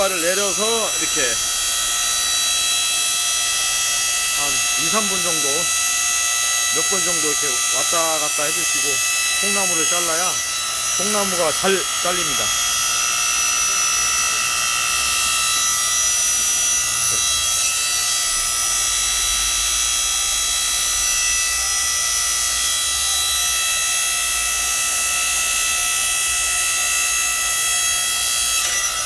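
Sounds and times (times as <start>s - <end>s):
log splitter motor and pump whining: 0.0s - 29.0s.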